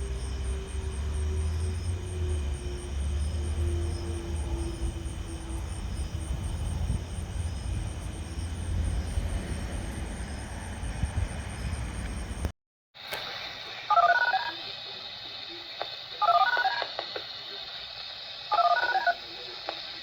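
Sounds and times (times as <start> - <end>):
faint warning siren: 0.0 - 12.5, 13.9 - 15.0, 15.6 - 17.6, 18.5 - 20.0
low wind rumble: 0.0 - 12.5
insects chirping: 0.0 - 20.0.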